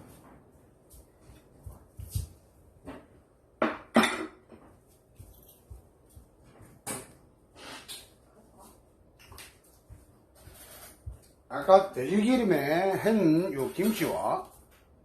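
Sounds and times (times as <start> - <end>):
dishes and cutlery clattering: 3.7 - 4.6.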